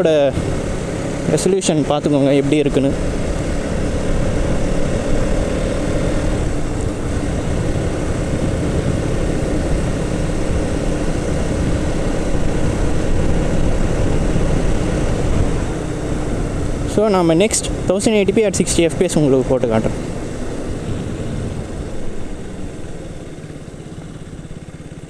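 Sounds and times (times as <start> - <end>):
motorcycle engine drone: 0.0 - 25.0
wind on microphone: 3.0 - 16.8, 19.9 - 22.9.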